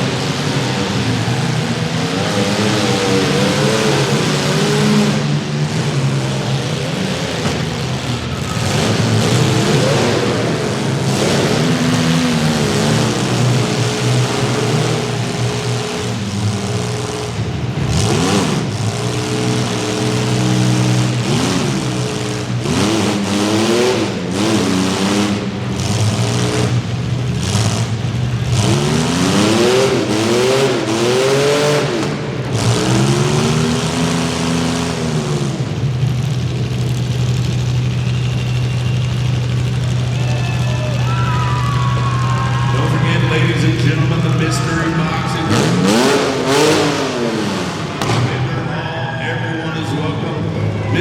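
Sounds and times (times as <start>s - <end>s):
car engines revving: 0.0s - 51.0s
sharp bangs: 44.0s - 48.7s.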